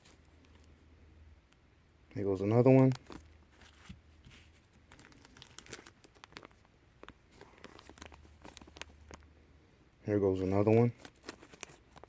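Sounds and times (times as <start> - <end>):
plastic packaging crinkling: 2.6 - 9.3, 10.3 - 12.0.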